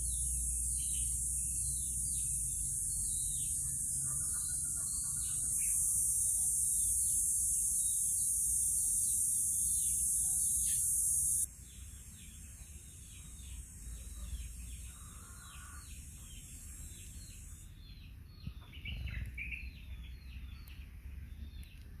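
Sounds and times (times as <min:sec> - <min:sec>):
bird chirping: 0:00.0 - 0:22.0
wind rumble on microphone: 0:18.4 - 0:19.7.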